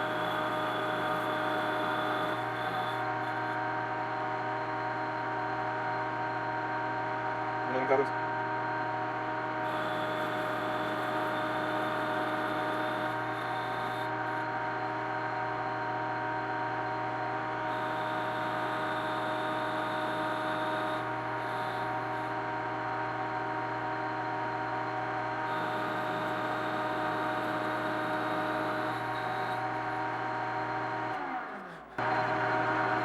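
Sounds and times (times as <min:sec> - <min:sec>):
cutting tool hissing on metal: 0:00.0 - 0:03.5, 0:09.7 - 0:14.3, 0:17.8 - 0:22.3, 0:25.5 - 0:30.0
metal lathe whining: 0:00.0 - 0:33.0.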